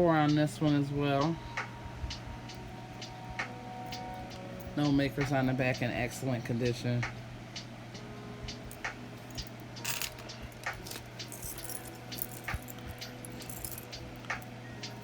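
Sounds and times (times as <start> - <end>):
steady low hum: 0.0 - 15.0
metal jewelry clinking: 8.7 - 15.0.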